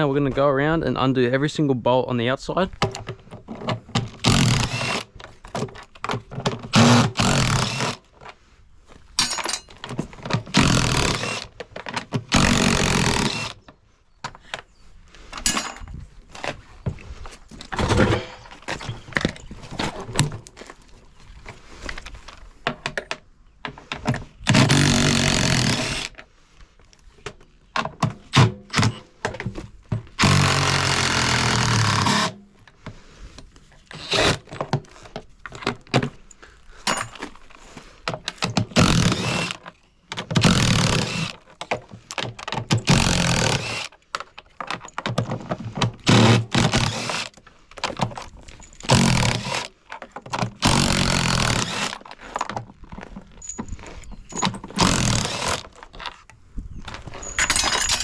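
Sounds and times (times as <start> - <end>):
metal parts knocking and clicking: 9.2 - 13.3, 36.8 - 56.2, 56.8 - 58.0.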